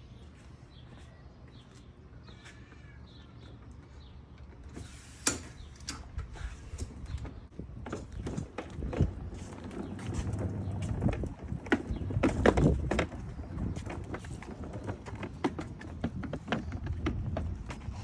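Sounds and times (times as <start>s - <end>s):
dolly cart clicks and knocks: 7.2s - 18.0s.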